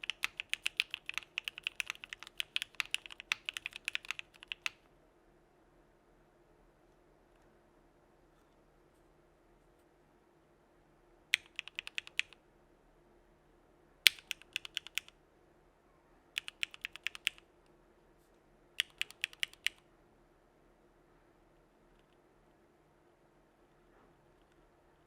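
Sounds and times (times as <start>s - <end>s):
mechanical keyboard typing: 0.0s - 4.8s, 11.4s - 12.4s, 14.1s - 15.1s, 16.4s - 17.4s, 18.8s - 19.8s.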